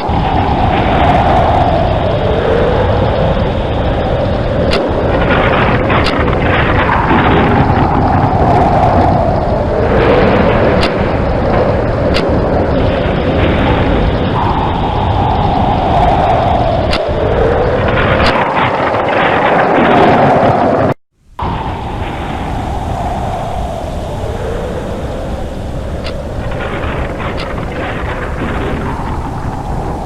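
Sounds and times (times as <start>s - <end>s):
heavy rain: 0.0s - 30.0s
thunder rumble: 0.0s - 30.0s
sharp clicks or cracks: 4.7s - 7.8s, 10.7s - 11.1s, 12.1s - 12.4s, 16.9s - 17.2s, 17.9s - 20.2s, 26.0s - 30.0s.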